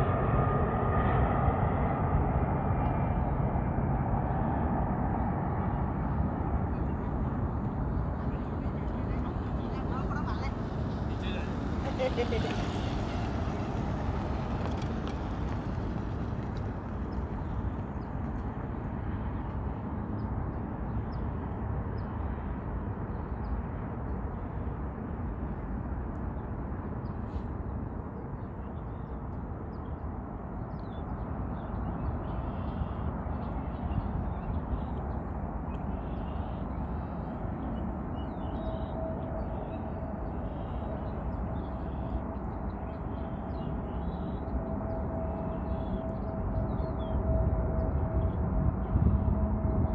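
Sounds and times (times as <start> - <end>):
low outdoor rumble: 0.0 - 21.7.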